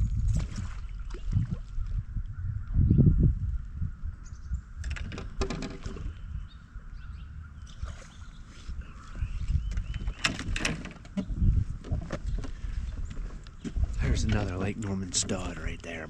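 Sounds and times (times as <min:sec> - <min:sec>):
water splashing: 0:00.0 - 0:01.9
wind rumble on microphone: 0:00.0 - 0:16.0.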